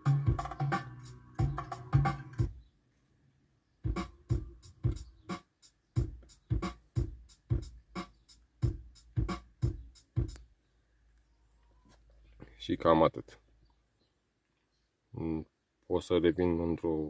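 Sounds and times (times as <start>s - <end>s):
music with a strong steady beat: 0.0s - 2.6s, 3.8s - 10.4s.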